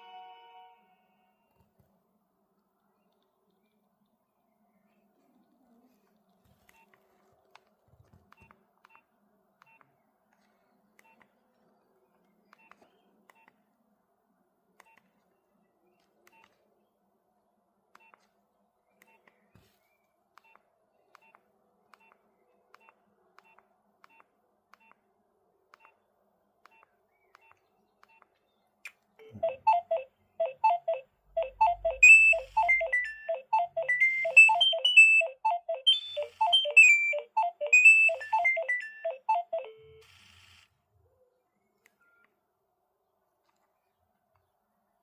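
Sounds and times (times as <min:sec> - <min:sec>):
phone ringtone melody: 0:00.0 - 0:00.9, 0:29.2 - 0:40.0.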